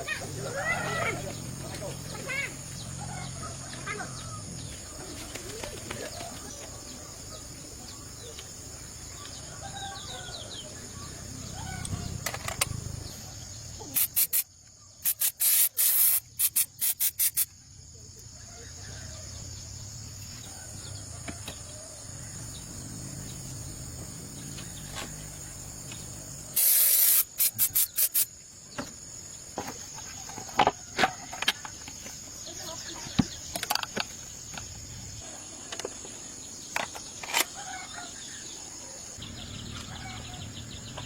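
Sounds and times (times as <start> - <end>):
hissing spray bursts: 13.8 - 17.5, 26.5 - 28.4.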